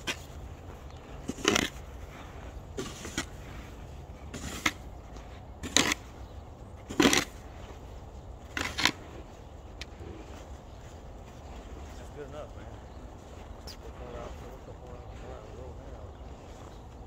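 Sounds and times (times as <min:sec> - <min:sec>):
snow shovel scraping packed snow: 0:01.2 - 0:04.9, 0:05.6 - 0:06.1.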